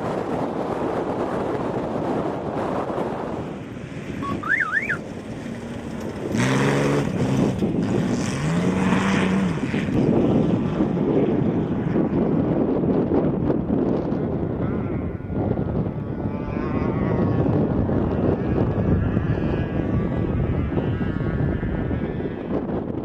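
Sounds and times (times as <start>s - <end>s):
wind buffeting microphone: 0.0s - 23.0s
race vehicle engine: 1.4s - 12.4s.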